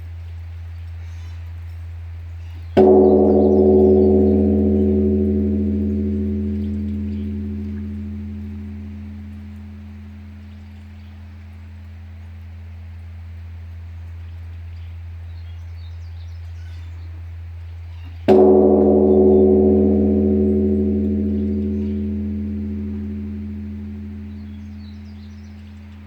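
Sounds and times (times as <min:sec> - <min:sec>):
low steady bell hum: 0:01.6 - 0:14.8, 0:18.2 - 0:26.0
large temple bell ringing: 0:02.7 - 0:12.2, 0:18.3 - 0:26.0.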